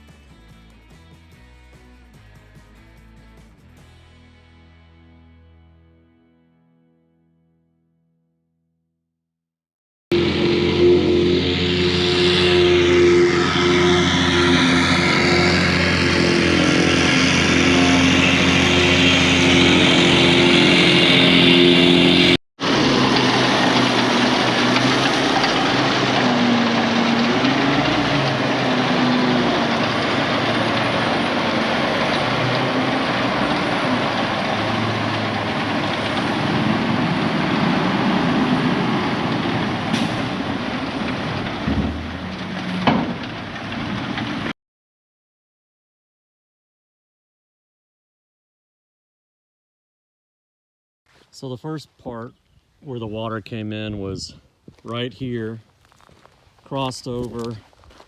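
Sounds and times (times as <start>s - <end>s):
heavy equipment engine running: 10.1s - 44.5s, 54.7s - 58.0s.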